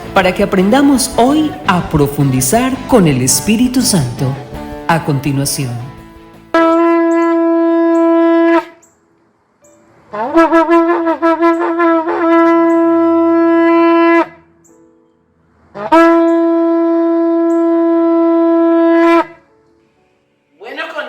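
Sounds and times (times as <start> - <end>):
ram's-horn trumpet blasts: 6.5 - 8.9, 10.1 - 14.5, 15.8 - 19.4.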